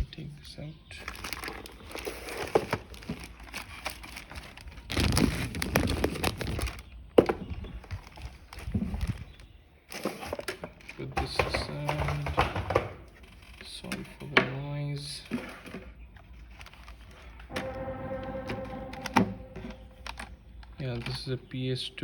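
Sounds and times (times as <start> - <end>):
packaging crackling and rustling: 1.0 - 7.0.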